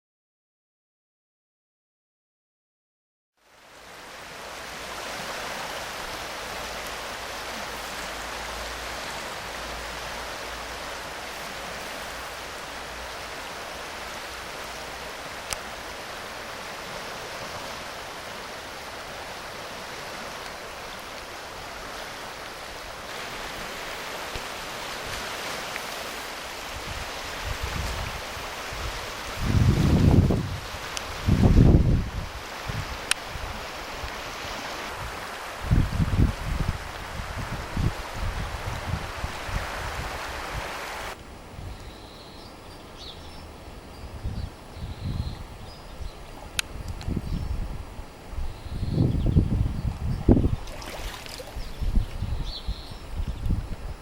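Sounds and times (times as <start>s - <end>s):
rushing floodwater: 3.4s - 44.7s, 45.4s - 54.0s
wind buffeting microphone: 26.0s - 33.6s, 34.9s - 40.8s, 44.0s - 54.0s.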